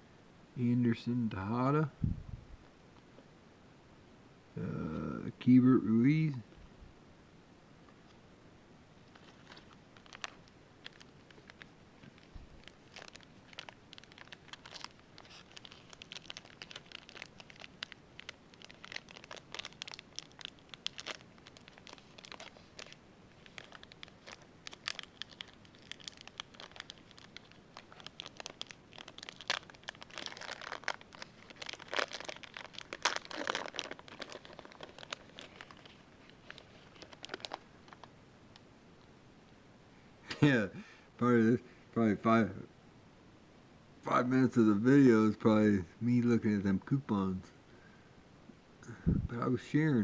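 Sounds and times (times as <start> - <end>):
foil wrapper crinkling and tearing: 9.1 - 38.1.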